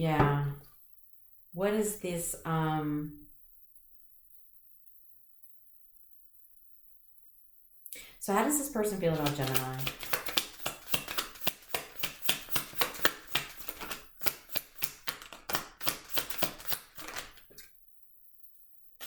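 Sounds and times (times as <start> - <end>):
cards shuffled by hand: 9.1 - 17.7.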